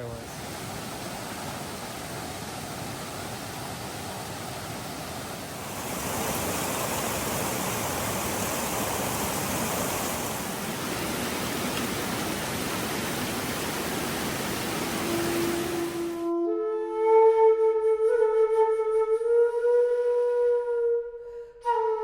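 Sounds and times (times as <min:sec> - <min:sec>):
flute-like music note: 0:15.0 - 0:22.0.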